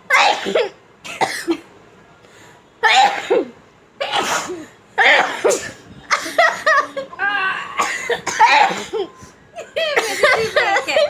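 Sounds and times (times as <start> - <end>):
women sneezing: 0.1 - 1.4, 2.8 - 6.5, 7.4 - 9.1
women coughing: 0.1 - 1.7, 2.8 - 11.0
women laughing: 6.1 - 7.4, 9.7 - 11.0.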